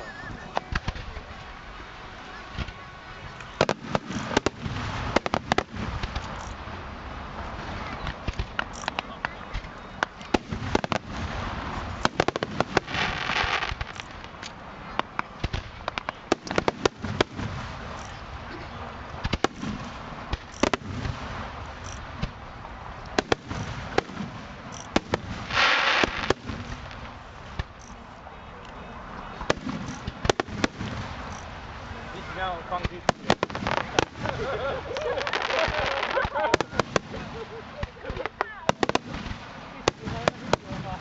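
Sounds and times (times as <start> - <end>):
fireworks bangs: 0.0 - 41.0
hissing noise: 0.0 - 41.0.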